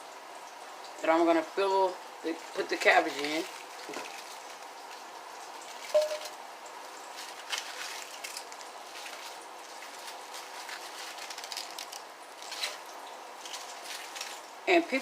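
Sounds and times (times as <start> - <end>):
steady background hiss: 0.0 - 15.0
cabbage pieces dropping into pot: 2.9 - 4.6, 7.1 - 14.4.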